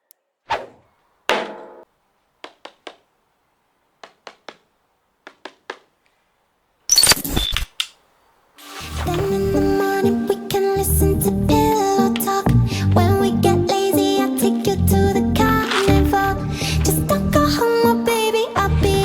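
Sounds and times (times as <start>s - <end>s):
packaging crinkling and rustling: 15.6s - 17.0s.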